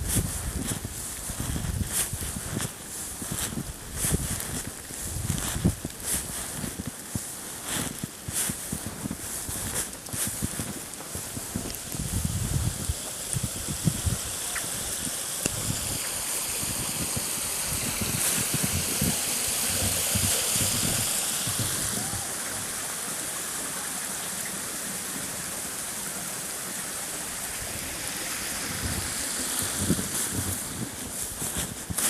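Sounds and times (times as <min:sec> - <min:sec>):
wind buffeting microphone: 0:00.0 - 0:06.9, 0:08.8 - 0:22.2, 0:28.6 - 0:32.0
blizzard wind rushing: 0:00.0 - 0:22.8, 0:27.3 - 0:32.0.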